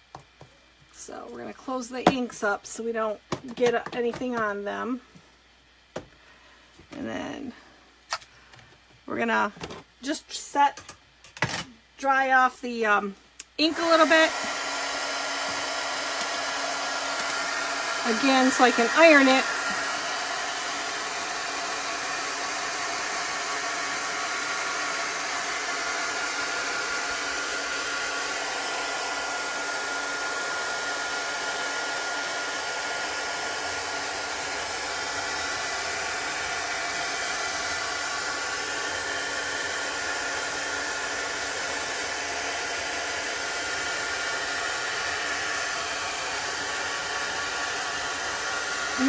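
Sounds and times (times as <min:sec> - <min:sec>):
hot-air dryer blowing: 0:00.9 - 0:05.2, 0:12.1 - 0:49.0.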